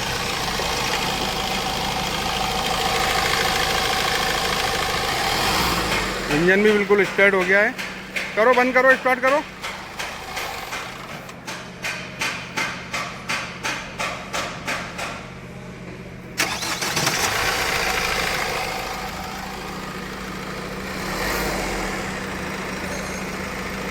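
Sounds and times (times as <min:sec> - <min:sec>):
diesel engine starting and idling: 0:00.0 - 0:11.6, 0:16.1 - 0:23.9.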